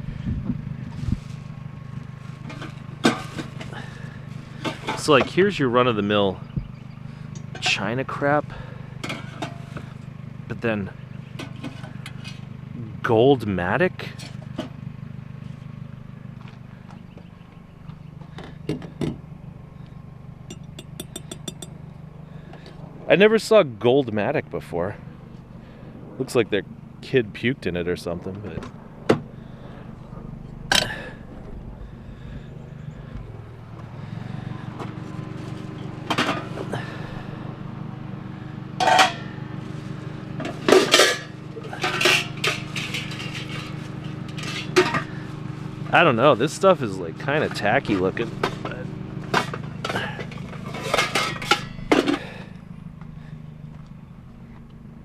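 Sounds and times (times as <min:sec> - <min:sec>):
steady low hum: 0:00.0 - 0:55.0
vehicle engine idling: 0:00.0 - 0:55.0
metal pots and pans clanking: 0:02.4 - 0:04.0, 0:04.6 - 0:05.4, 0:09.0 - 0:09.9, 0:38.8 - 0:39.4, 0:40.4 - 0:45.2, 0:48.4 - 0:52.4.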